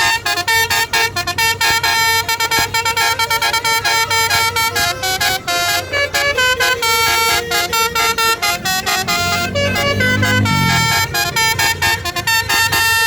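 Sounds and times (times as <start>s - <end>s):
bus horn playing a fast tune: 0.0s - 13.0s
deeper tone: 8.0s - 12.0s.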